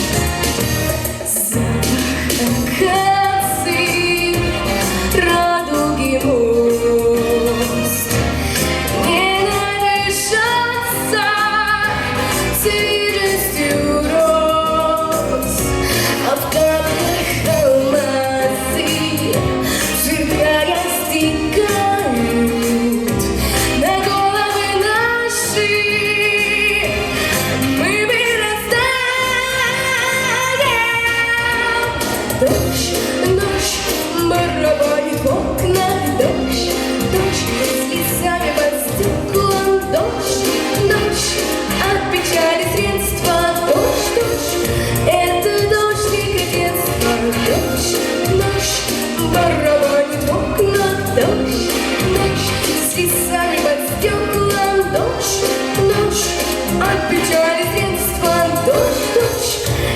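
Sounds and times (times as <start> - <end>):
backing music: 0.0 - 59.9
girl singing with vibrato: 9.0 - 59.9.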